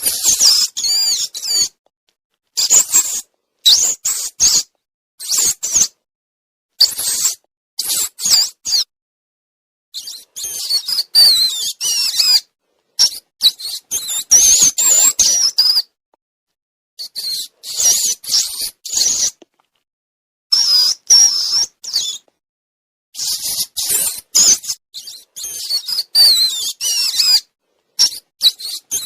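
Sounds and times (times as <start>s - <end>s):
rodent squeaking: 0.0s - 1.8s, 2.6s - 6.0s, 6.8s - 8.9s, 10.0s - 15.9s, 17.0s - 19.4s, 20.5s - 22.3s, 23.2s - 29.0s.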